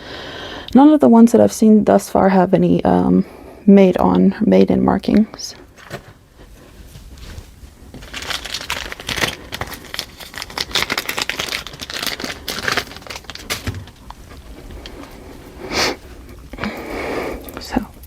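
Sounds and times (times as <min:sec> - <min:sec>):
packaging crinkling: 0:07.0 - 0:18.0.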